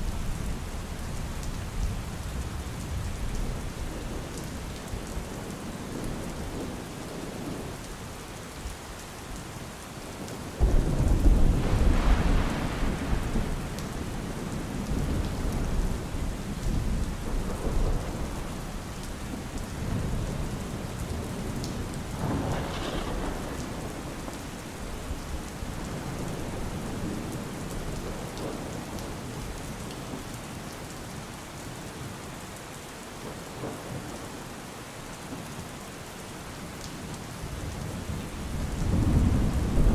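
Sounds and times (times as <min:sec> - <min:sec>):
steady rain: 0:00.0 - 0:39.9
thunder rumble: 0:10.6 - 0:28.8, 0:37.6 - 0:39.9.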